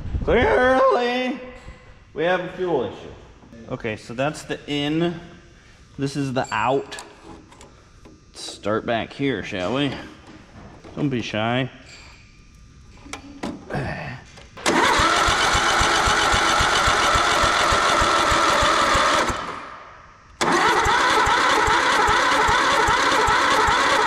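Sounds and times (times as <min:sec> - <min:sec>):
engine cranking on starter: 0:14.6 - 0:19.7, 0:20.4 - 0:24.0.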